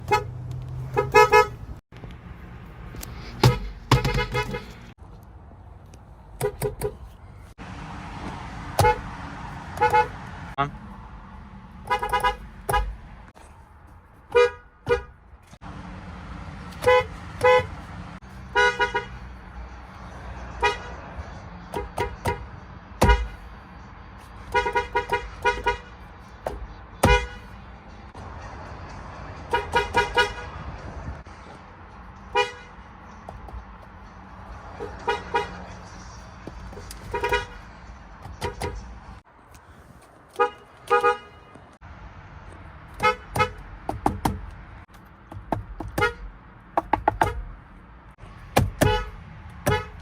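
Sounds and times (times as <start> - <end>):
car horns honking: 0.0 - 1.8, 3.2 - 4.9, 8.7 - 10.8, 11.8 - 13.1, 14.3 - 15.3, 16.7 - 19.6, 20.4 - 23.5, 24.4 - 28.0, 29.4 - 30.8, 32.2 - 33.1, 34.1 - 39.2, 40.3 - 41.8, 42.9 - 43.7, 45.8 - 46.4, 48.6 - 50.0.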